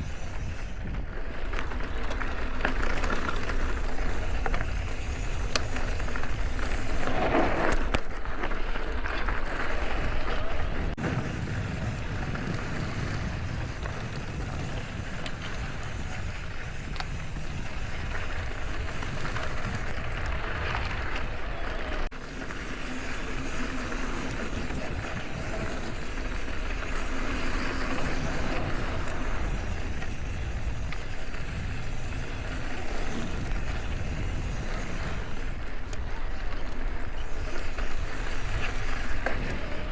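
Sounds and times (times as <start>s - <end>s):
bike rolling on dirt trail: 0.0s - 39.9s
wind buffeting microphone: 9.8s - 39.9s.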